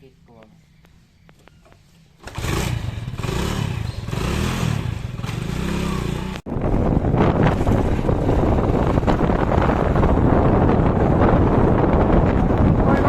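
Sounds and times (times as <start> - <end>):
rough clattering engine: 2.2 - 6.4
diesel engine revving: 2.2 - 10.9.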